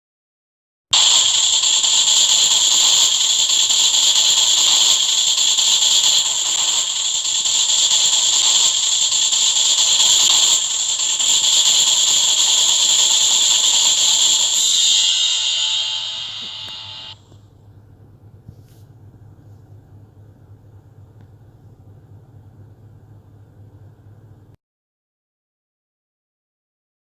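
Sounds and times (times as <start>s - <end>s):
deep fryer sizzling hiss: 1.0s - 17.2s.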